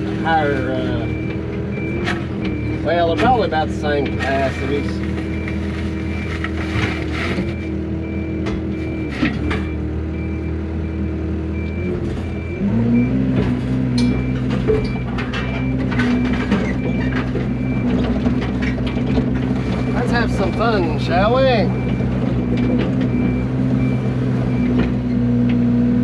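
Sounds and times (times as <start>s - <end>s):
diesel engine idling: 0.0s - 26.0s
high electronic beeps: 19.8s - 22.0s.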